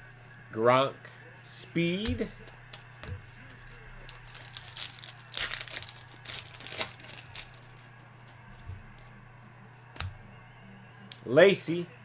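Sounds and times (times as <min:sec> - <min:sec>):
trading card packaging crinkling: 0:02.0 - 0:09.2.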